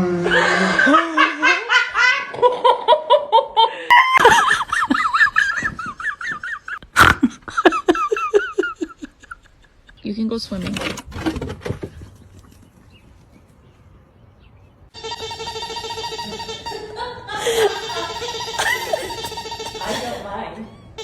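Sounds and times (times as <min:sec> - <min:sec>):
hearty laughter: 0:00.1 - 0:10.0, 0:15.1 - 0:21.0.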